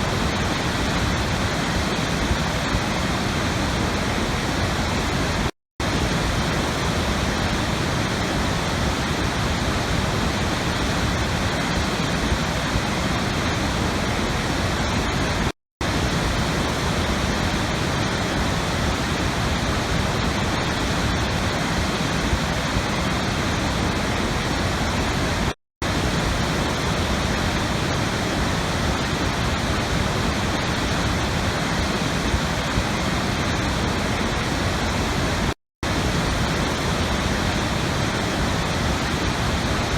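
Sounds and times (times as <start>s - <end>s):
rushing water: 0.0s - 39.9s.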